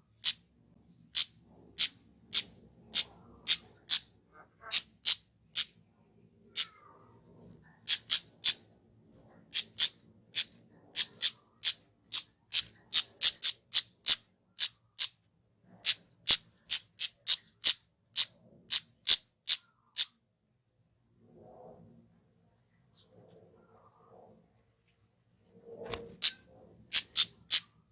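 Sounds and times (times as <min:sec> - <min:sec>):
faint rustle: 0:21.7 - 0:26.2
bird calling high-pitched notes: 0:26.2 - 0:27.7.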